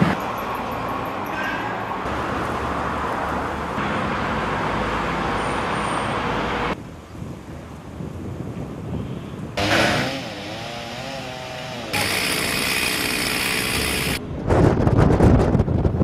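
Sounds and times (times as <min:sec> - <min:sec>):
steady rushing outdoor noise: 0:11.9 - 0:16.0.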